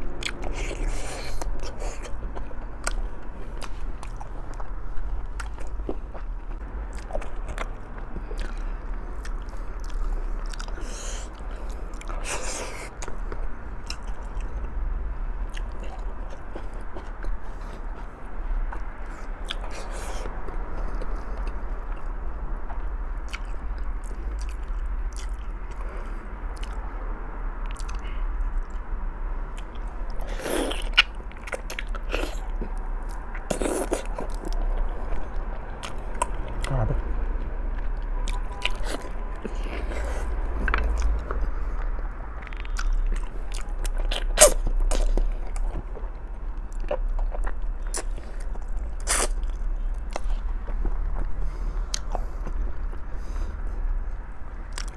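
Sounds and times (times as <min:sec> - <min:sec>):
moist chewing and smacking: 0:00.1 - 0:14.6, 0:26.5 - 0:26.9, 0:27.6 - 0:28.8, 0:29.5 - 0:36.8, 0:37.4 - 0:53.1, 0:54.7 - 0:54.9.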